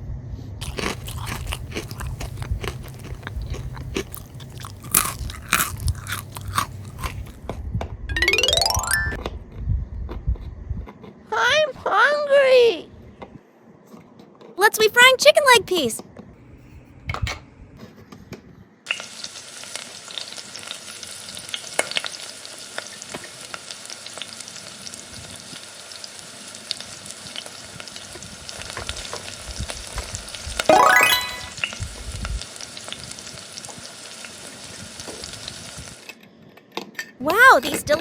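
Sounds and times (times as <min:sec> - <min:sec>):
chicken frying in oil: 0:18.9 - 0:29.4, 0:33.2 - 0:36.1.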